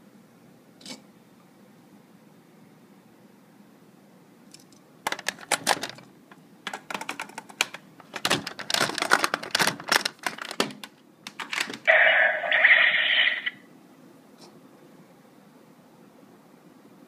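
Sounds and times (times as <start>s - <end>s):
electronic toy sound effect: 11.9s - 13.6s.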